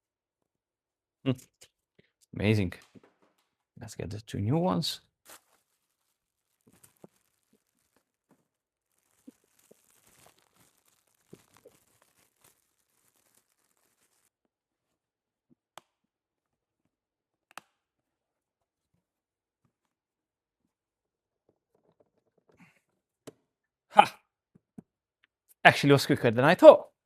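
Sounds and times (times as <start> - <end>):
packaging rustling and crinkling: 5.2 - 14.4.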